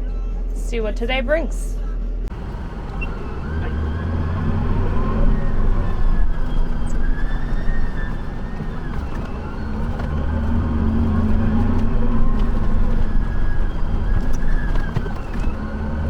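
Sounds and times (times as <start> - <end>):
diesel engine drone with whine: 2.2 - 16.0.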